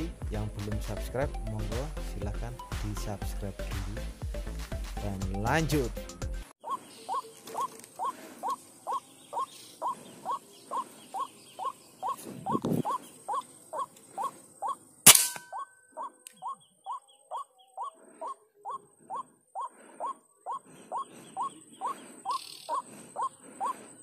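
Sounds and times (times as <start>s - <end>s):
bird calling: 6.6s - 24.0s.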